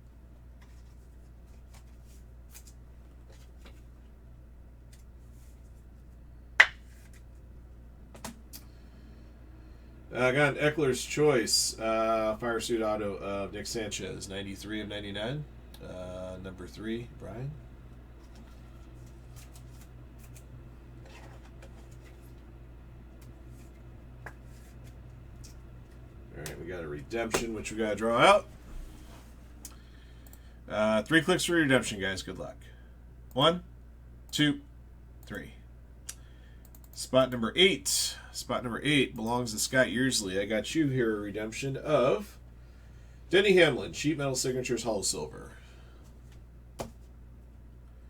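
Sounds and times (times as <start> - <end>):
low electrical hum: 0.0 - 48.0
trading cards being handled: 0.6 - 4.0, 6.6 - 7.4, 18.2 - 22.5, 23.2 - 26.6
trading cards rustling: 18.2 - 22.4.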